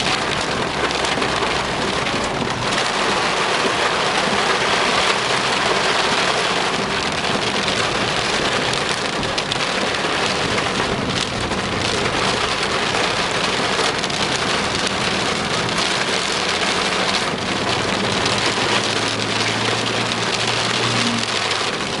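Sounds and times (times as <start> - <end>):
rain pouring: 0.0 - 22.0.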